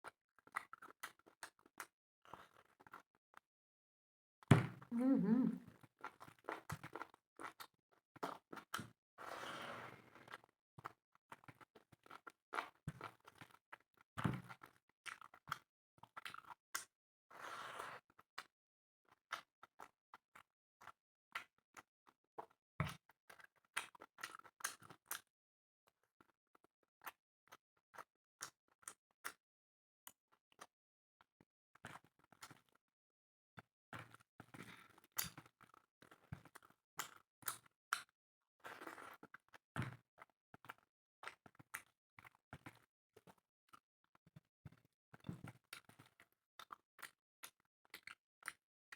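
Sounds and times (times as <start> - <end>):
person chewing food: 6.1 - 7.6, 14.5 - 16.6, 45.7 - 48.6.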